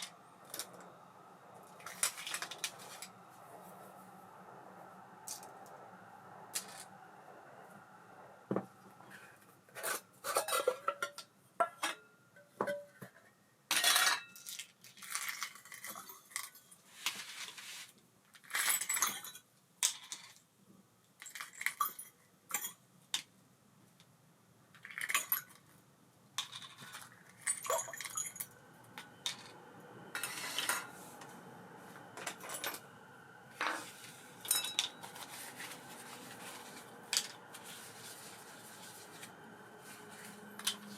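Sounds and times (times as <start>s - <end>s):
small metal parts clinking: 13.8s - 16.7s, 26.4s - 28.6s
metal scrapes: 26.8s - 32.9s, 33.5s - 40.9s.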